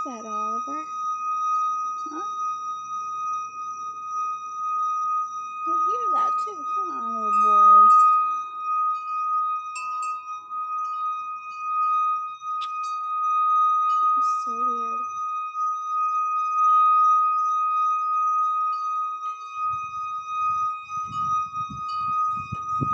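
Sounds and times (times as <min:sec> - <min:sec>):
high-pitched droning hum: 0:00.0 - 0:22.9
low rumbling thumps: 0:19.7 - 0:22.9.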